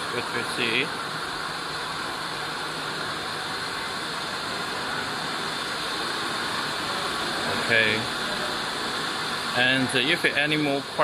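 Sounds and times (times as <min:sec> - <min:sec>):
factory machinery hum and hiss: 0:00.0 - 0:11.0.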